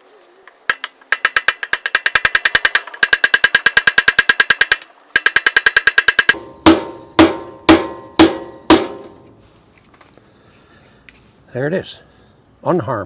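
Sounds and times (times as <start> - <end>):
rapid metallic clicking: 0.5 - 9.2
hammer blows on metal: 1.2 - 9.4.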